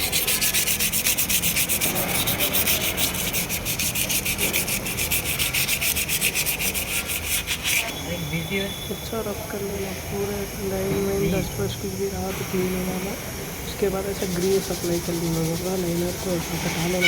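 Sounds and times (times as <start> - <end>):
sandpaper rubbing brake lining: 0.0 - 7.9, 14.2 - 17.0.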